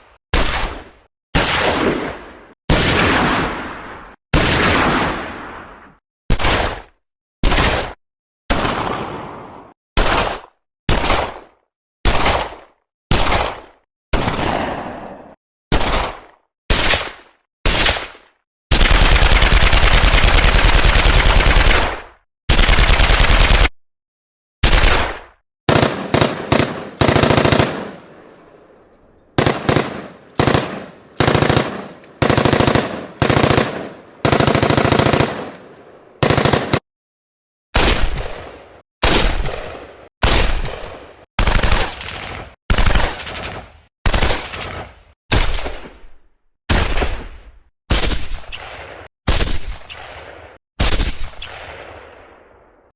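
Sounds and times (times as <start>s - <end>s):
sharp gunshots: 24.6s - 36.8s
automatic gunfire bursts: 25.7s - 36.8s.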